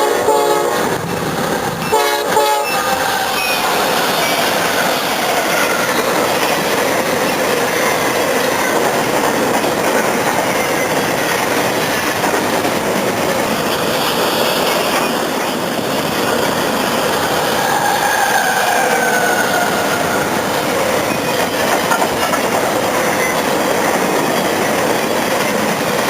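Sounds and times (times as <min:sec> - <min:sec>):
train wheels rolling on rail: 0:00.0 - 0:26.0
high-pitched wheel squeal: 0:17.5 - 0:20.4.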